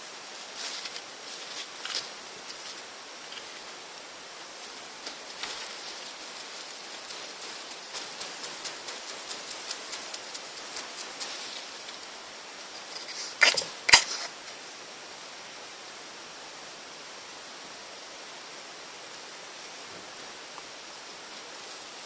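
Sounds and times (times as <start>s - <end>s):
hedgehog ticking: 5.4s - 11.4s
hedgehog sneezing: 13.1s - 14.3s.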